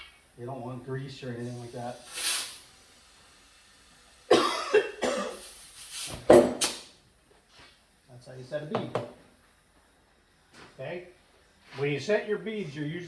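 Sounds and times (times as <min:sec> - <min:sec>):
short air hiss: 0:01.1 - 0:08.0
air rushing into tire: 0:01.4 - 0:04.2, 0:05.4 - 0:07.0.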